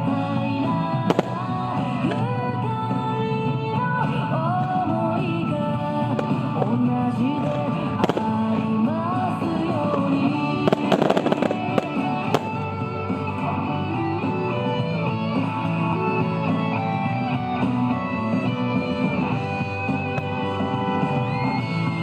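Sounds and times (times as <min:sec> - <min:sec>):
music: 0:00.0 - 0:22.0
firework bangs and crackles: 0:01.0 - 0:02.3, 0:06.0 - 0:13.4.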